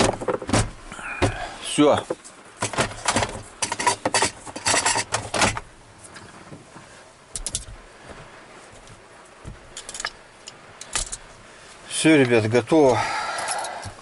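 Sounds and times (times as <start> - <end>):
heavy rain hiss: 0.8 - 4.5, 5.5 - 14.0
tools clattering and knocking: 2.6 - 5.7, 7.4 - 7.8, 9.7 - 11.2.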